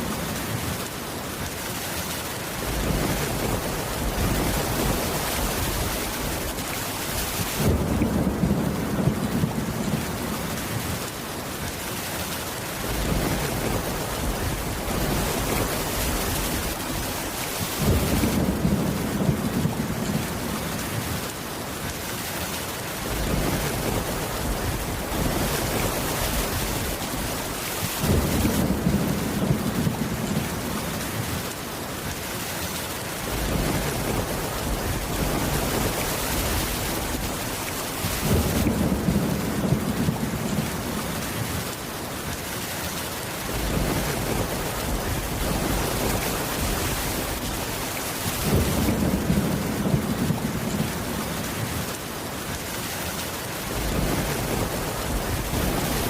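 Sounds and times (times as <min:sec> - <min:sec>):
steady rain: 0:00.0 - 0:56.0
low thunder rumbles: 0:02.6 - 0:11.0, 0:12.8 - 0:21.3, 0:23.0 - 0:31.5, 0:33.2 - 0:41.7, 0:43.4 - 0:52.0, 0:53.7 - 0:56.0.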